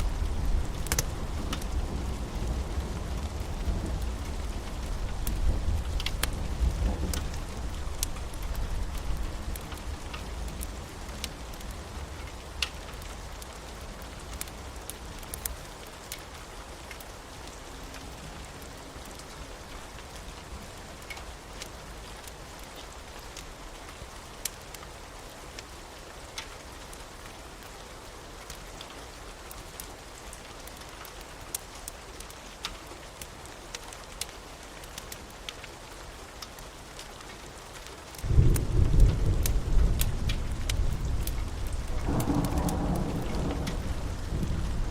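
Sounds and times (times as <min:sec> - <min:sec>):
low thunder rumble: 0:00.0 - 0:10.1, 0:38.2 - 0:44.9
raindrops ticking: 0:00.0 - 0:44.9
steady rain hiss: 0:00.0 - 0:44.9.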